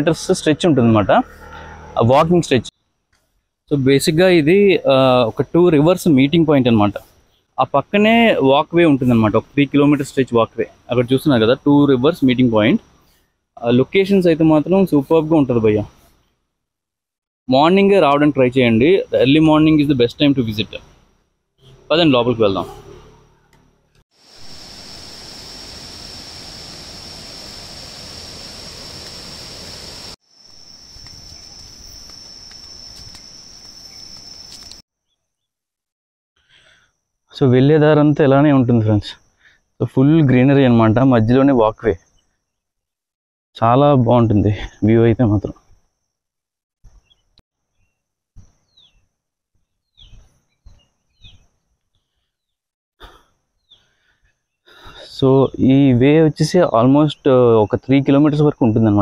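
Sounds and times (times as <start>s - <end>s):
faint birdsong chirps: 5.2s - 7.6s, 30.4s - 35.6s, 46.9s - 52.7s, 53.5s - 55.6s
high insect drone: 24.2s - 34.8s.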